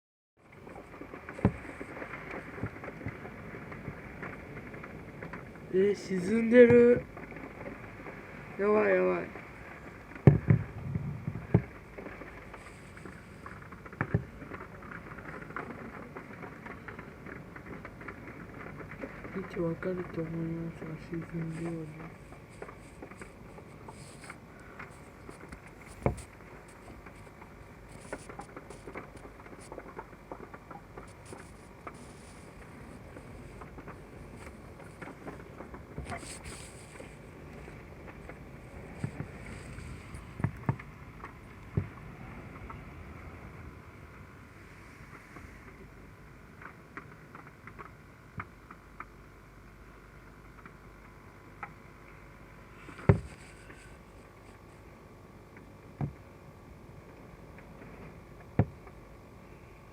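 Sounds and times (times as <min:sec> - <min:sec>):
raindrops pattering: 0:00.4 - 0:59.9
heavy rain hiss: 0:19.2 - 0:46.4.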